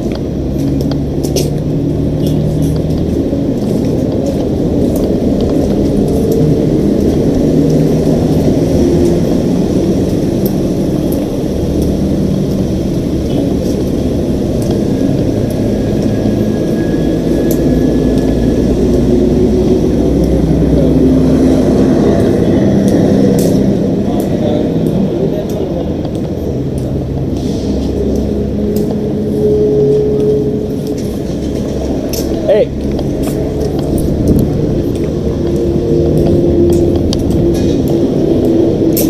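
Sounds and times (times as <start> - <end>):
vehicle engine rumbling: 0.0 - 39.0.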